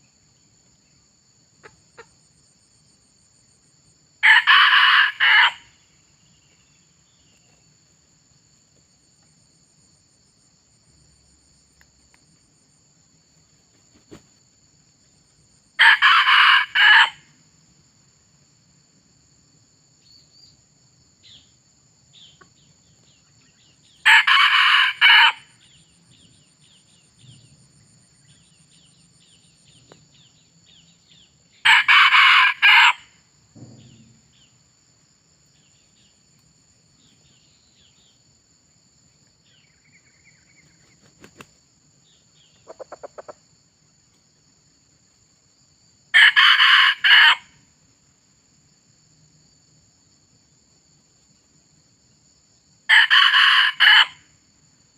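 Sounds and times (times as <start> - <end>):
high insect drone: 0.0 - 54.9
rooster crowing: 4.2 - 5.7, 15.8 - 17.3, 24.0 - 25.5, 31.6 - 33.1, 46.1 - 47.6, 52.9 - 54.3.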